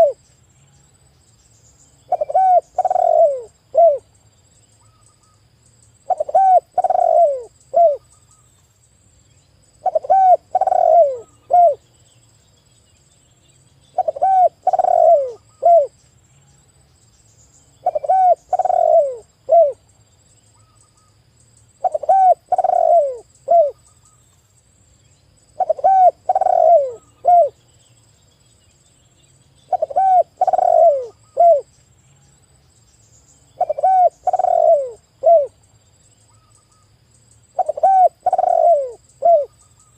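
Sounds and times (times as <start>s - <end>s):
dove cooing: 0.0s - 0.2s, 2.1s - 4.1s, 6.1s - 8.0s, 9.8s - 11.8s, 13.9s - 15.9s, 17.8s - 19.8s, 21.8s - 23.8s, 25.6s - 27.6s, 29.7s - 31.7s, 33.6s - 35.6s, 37.6s - 39.6s.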